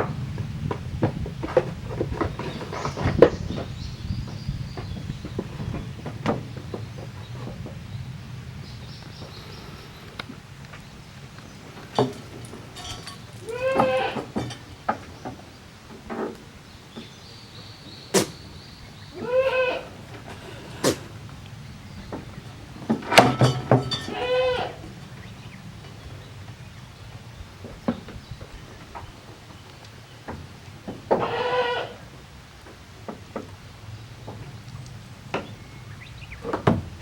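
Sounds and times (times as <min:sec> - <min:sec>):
goats bleating: 0:12.8 - 0:14.4, 0:19.1 - 0:21.1, 0:23.1 - 0:24.9, 0:31.1 - 0:32.0
sharp knocks: 0:22.9 - 0:24.2.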